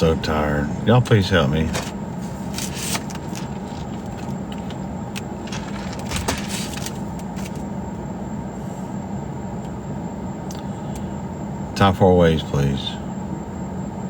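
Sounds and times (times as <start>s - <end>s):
car rumbling: 0.0s - 7.9s.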